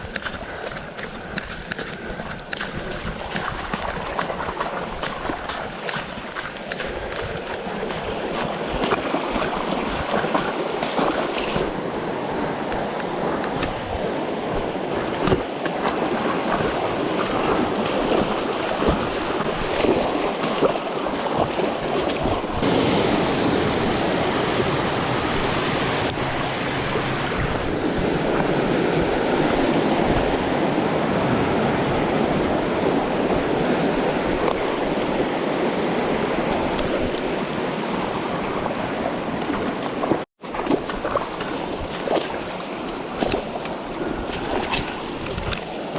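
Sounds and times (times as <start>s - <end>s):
footsteps on a trail: 0.0s - 11.6s
flowing river water: 0.0s - 45.9s.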